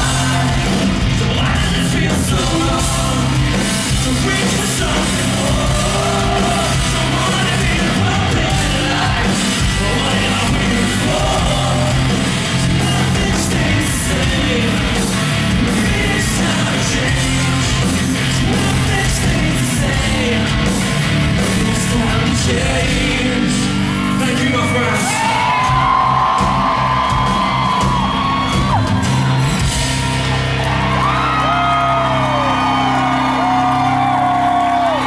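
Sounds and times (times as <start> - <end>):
person singing: 0.0 - 20.8, 21.4 - 26.2
live rock band playing: 0.0 - 35.0.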